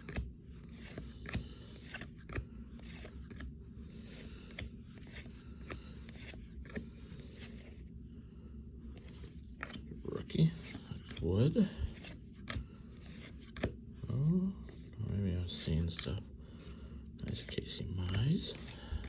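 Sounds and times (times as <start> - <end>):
cards flipping snap: 0.8 - 3.4, 13.2 - 13.7.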